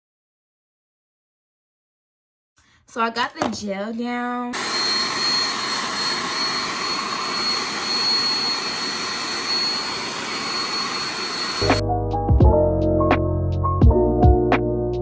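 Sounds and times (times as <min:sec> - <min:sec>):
blow dryer whooshing with high whine: 0:04.6 - 0:11.8.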